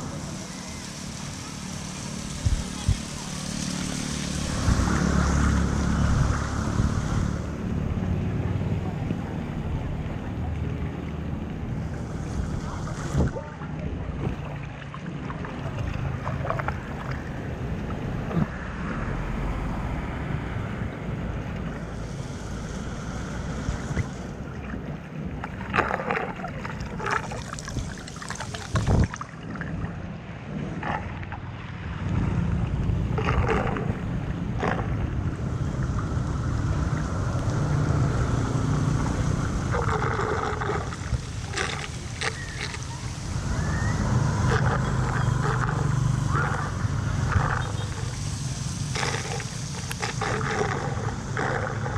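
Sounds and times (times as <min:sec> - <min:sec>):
floodwater rushing and splashing: 0:00.0 - 0:51.9
wind buffeting microphone: 0:26.5 - 0:29.2.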